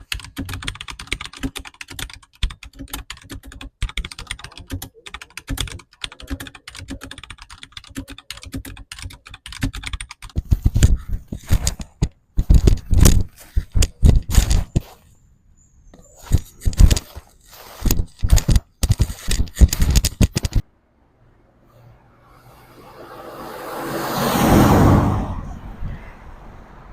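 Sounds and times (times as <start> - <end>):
rapid clicks and taps: 0.0 - 15.0, 16.2 - 20.7.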